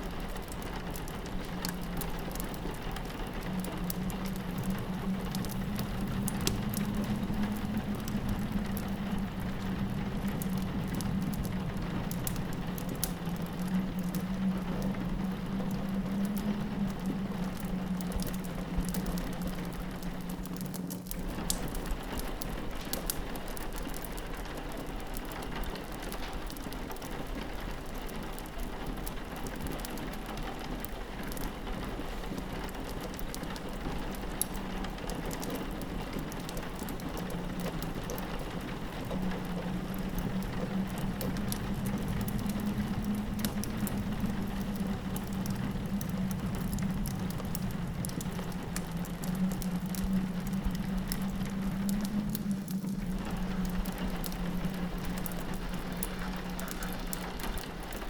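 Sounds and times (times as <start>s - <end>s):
fireplace crackling: 0.0s - 58.0s
rain pattering on a window: 0.0s - 58.0s
wind howling: 1.8s - 20.6s, 35.7s - 58.0s.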